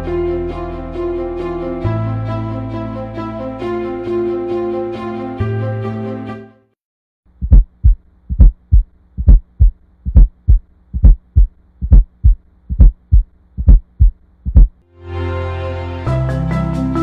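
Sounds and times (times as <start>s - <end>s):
music: 0.0s - 6.8s, 14.8s - 17.0s
heartbeat thumps: 7.3s - 14.8s.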